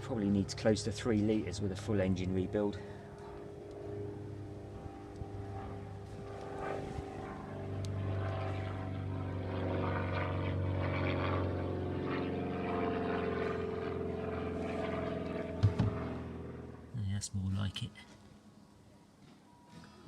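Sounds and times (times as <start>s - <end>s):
small engine droning: 2.2s - 16.9s
sharp knock: 15.6s - 16.0s.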